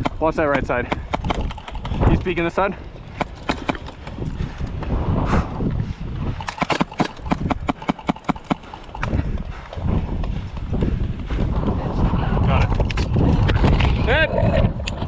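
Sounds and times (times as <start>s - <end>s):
airsoft guns firing: 0.0s - 2.2s, 3.2s - 4.3s, 6.4s - 9.1s.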